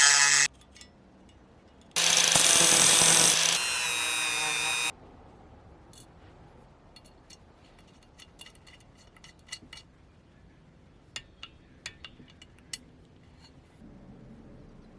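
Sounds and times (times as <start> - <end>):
small metallic clicks and clinks: 0.5 - 2.0, 6.9 - 10.0.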